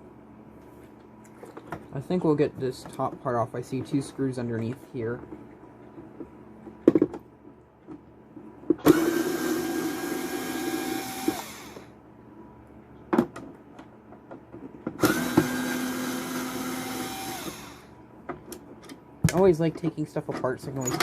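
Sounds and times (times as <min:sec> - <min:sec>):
cordless drill whining: 0:08.8 - 0:11.9, 0:15.0 - 0:17.9.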